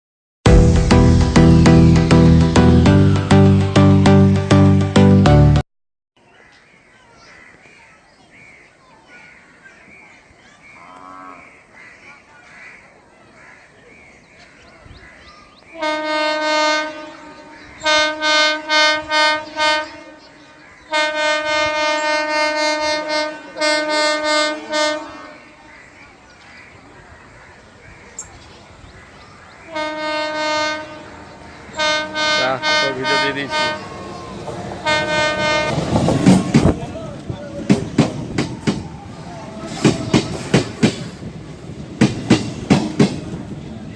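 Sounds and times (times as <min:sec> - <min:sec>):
birds calling: 0:06.2 - 0:43.8
locomotive horn blasts: 0:15.7 - 0:25.6, 0:29.7 - 0:36.8.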